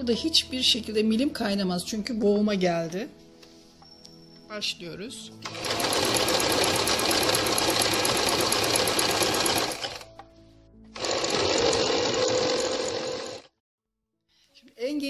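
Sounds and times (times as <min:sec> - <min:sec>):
sewing machine running: 0:05.4 - 0:10.1, 0:11.0 - 0:13.5.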